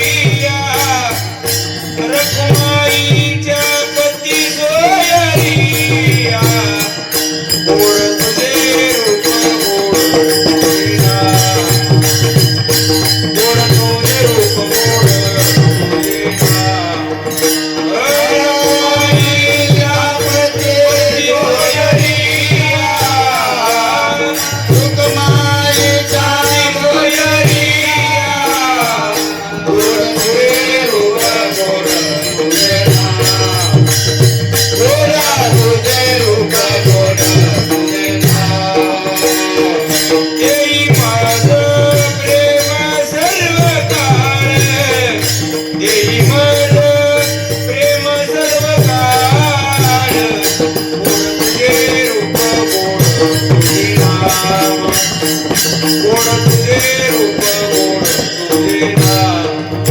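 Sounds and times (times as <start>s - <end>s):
person singing: 0.0s - 59.9s
small hand cymbals clashing: 0.0s - 59.9s.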